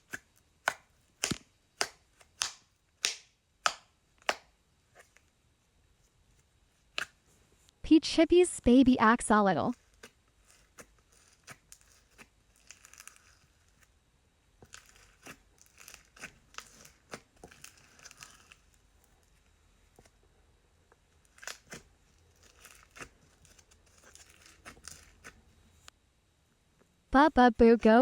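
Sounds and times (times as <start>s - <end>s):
slime squished by hand: 9.8s - 13.9s, 14.6s - 19.4s, 21.2s - 25.5s.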